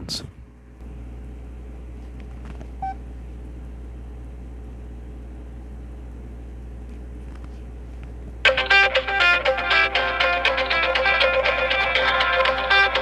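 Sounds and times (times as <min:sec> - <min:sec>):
steady low hum: 0:00.0 - 0:13.0
phone key beep: 0:02.8 - 0:03.0
phone ringtone melody: 0:08.5 - 0:13.0.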